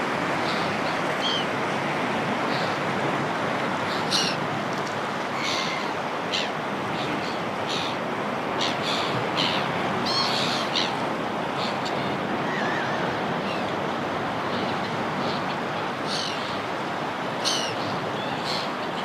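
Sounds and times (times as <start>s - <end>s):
sea waves washing: 0.0s - 19.0s
seagulls calling: 3.8s - 4.4s, 5.3s - 13.7s, 14.4s - 19.0s.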